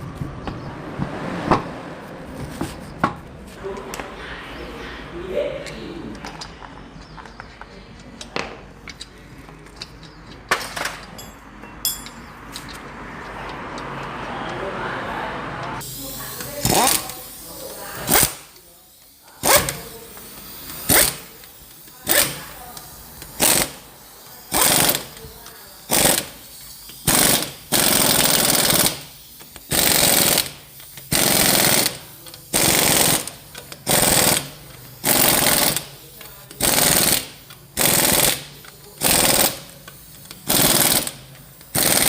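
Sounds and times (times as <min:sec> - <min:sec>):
pneumatic air tool bursts: 0:15.8 - 0:42.0.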